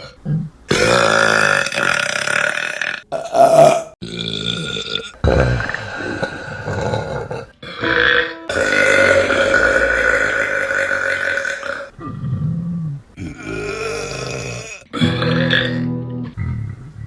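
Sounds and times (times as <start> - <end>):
woman burping: 0.7 - 11.9.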